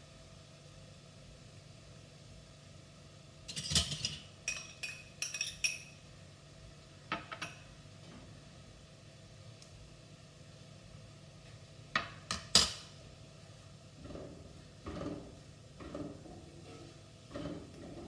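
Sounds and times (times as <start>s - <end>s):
utensils and dishes clinking: 3.5s - 6.0s.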